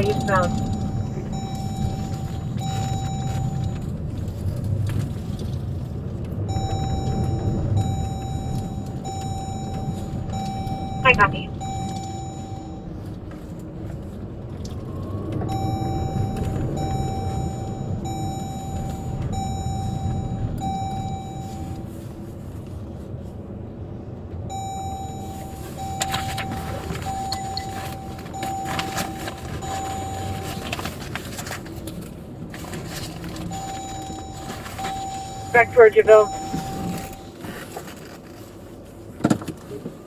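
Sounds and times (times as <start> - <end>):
electronic beep chiming: 0.0 - 3.8, 6.5 - 12.9, 24.5 - 30.6, 33.5 - 37.3
engine and road rumble: 0.0 - 40.0.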